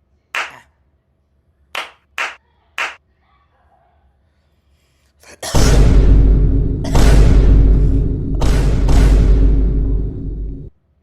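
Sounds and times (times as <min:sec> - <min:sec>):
hand claps: 0:00.4 - 0:00.6, 0:01.8 - 0:03.0
loud distorted blast: 0:05.4 - 0:10.7.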